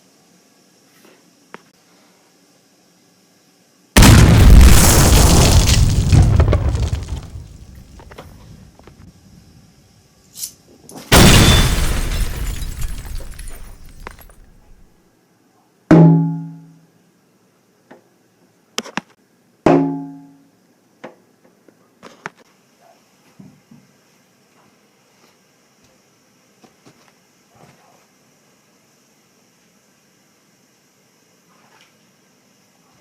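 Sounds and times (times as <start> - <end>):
loud blast of noise: 4.0 - 8.1.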